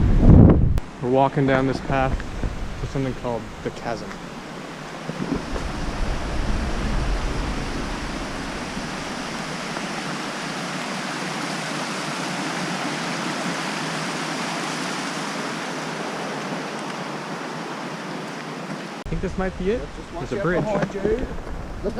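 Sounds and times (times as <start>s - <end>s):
low rumbling on microphone: 1.8s - 10.0s
river water tumbling over rocks: 2.0s - 17.5s.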